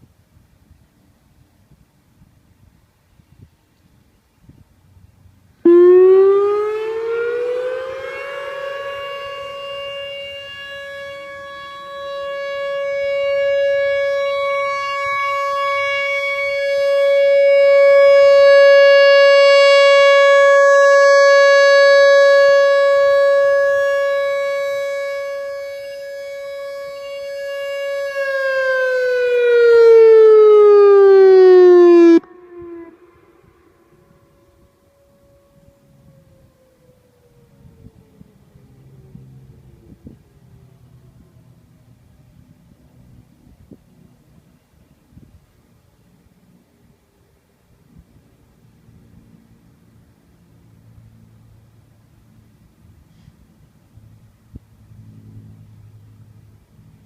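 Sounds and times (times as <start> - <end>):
tornado warning siren wailing: 5.6 - 43.3.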